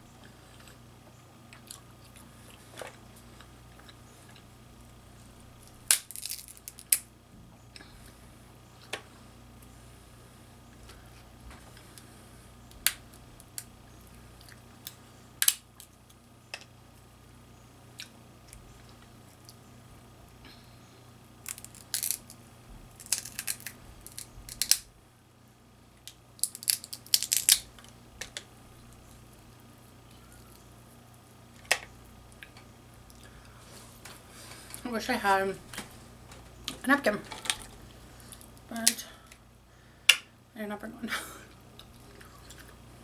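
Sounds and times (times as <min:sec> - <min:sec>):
shellfish shells cracking: 0:05.6 - 0:07.1, 0:14.5 - 0:16.0, 0:21.4 - 0:24.9, 0:26.0 - 0:29.0.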